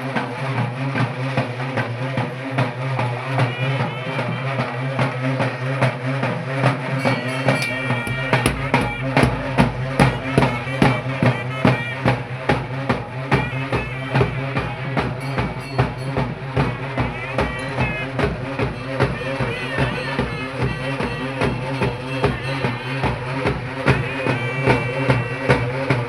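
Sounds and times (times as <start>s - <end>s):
music with steady drum beat: 0.0s - 26.0s
deep bass drum: 7.6s - 11.4s.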